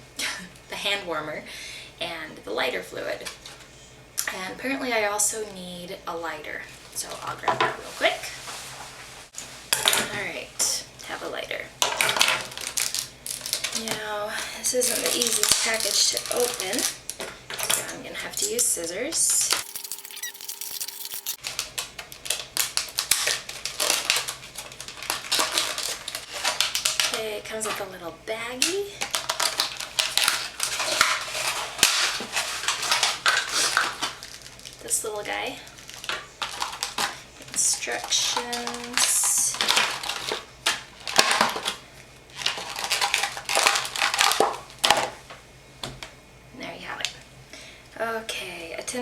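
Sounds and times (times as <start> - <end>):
packaging crinkling and rustling: 11.8 - 14.0, 14.8 - 17.8, 19.4 - 27.9, 28.6 - 34.9, 35.6 - 45.4.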